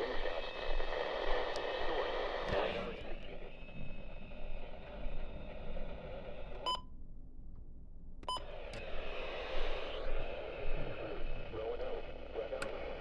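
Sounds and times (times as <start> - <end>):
radio broadcast hiss: 0.0 - 3.1, 9.3 - 13.0
person speaking on radio: 10.8 - 13.0.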